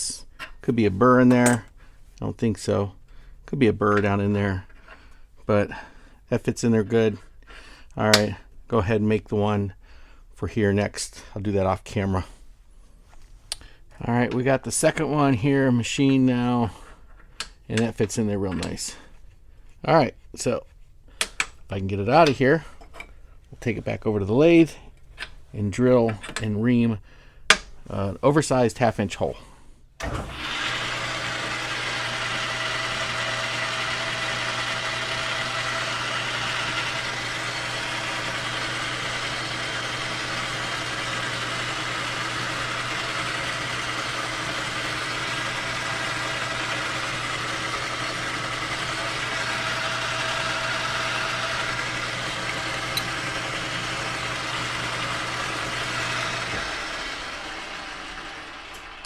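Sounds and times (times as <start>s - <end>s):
metal lathe motor humming: 30.0s - 59.0s.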